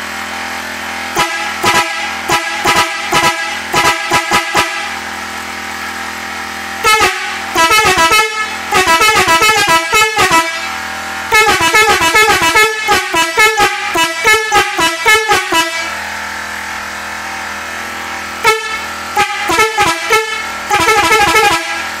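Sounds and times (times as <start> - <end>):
musical air horn playing tunes: 1.1 - 5.1, 6.8 - 16.0, 18.4 - 22.0
steady hum: 1.1 - 16.0.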